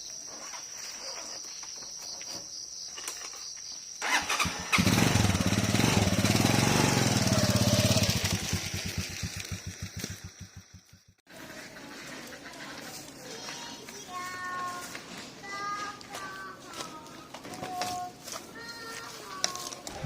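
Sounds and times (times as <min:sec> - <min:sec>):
insects trilling: 0:00.0 - 0:06.5
motorcycle engine running: 0:04.0 - 0:11.3, 0:19.6 - 0:20.0.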